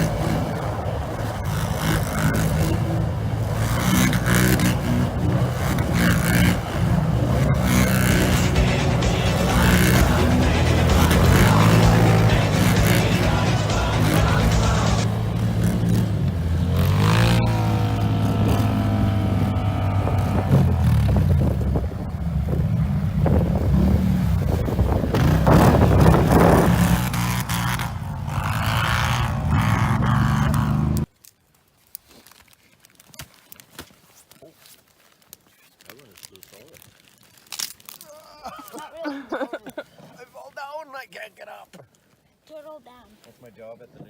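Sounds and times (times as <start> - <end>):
atv engines revving: 0.0 - 31.1.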